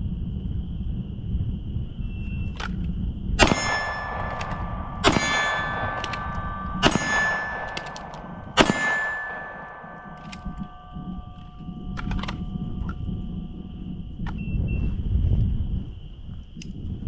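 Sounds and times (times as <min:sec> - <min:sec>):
steel targets clanging: 0:03.4 - 0:12.6.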